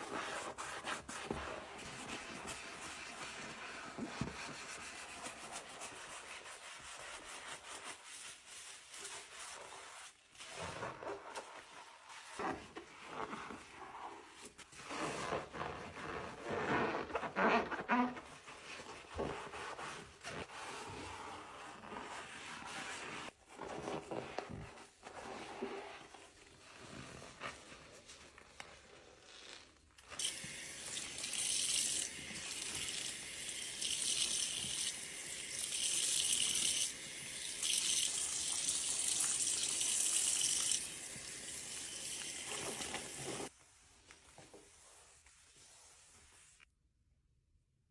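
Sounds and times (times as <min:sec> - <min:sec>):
sponge scrubbing a sink: 0:00.0 - 0:46.7
tap water running: 0:30.0 - 0:43.5.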